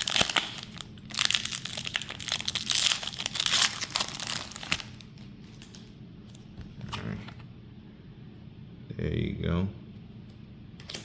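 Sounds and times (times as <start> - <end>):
foil wrapper crinkling and tearing: 0.0 - 5.9.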